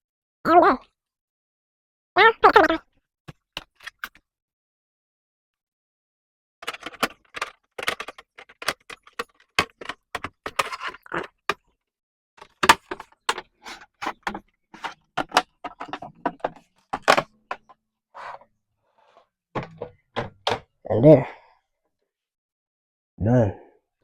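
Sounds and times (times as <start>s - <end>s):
plastic casing clicks and clatter: 6.6s - 11.6s, 12.4s - 17.8s.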